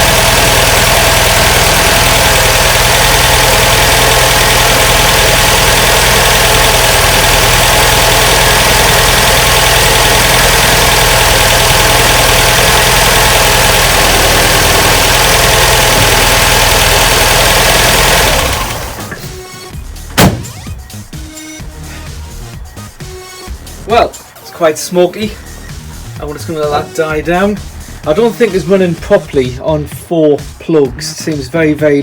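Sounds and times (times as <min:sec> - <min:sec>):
car engine idling lumpily: 0:00.0 - 0:21.1.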